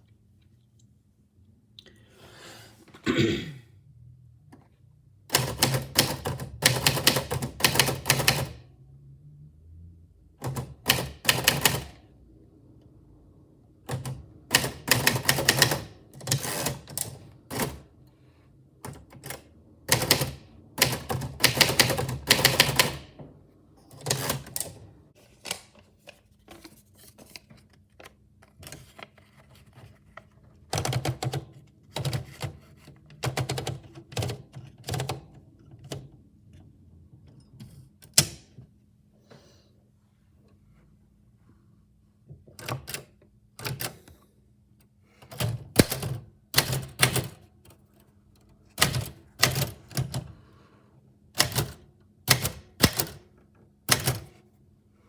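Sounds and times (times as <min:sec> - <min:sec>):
typewriter keys clicking: 0:05.3 - 0:08.6, 0:10.4 - 0:12.0, 0:13.9 - 0:17.9, 0:18.9 - 0:23.2, 0:24.0 - 0:24.8, 0:33.2 - 0:36.1, 0:45.3 - 0:47.4, 0:48.8 - 0:50.3, 0:51.4 - 0:53.3, 0:53.9 - 0:54.4.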